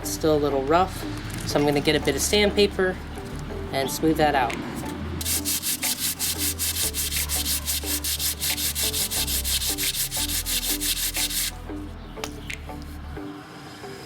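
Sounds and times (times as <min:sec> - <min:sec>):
sandpaper rubbing on wood: 0:05.2 - 0:11.6.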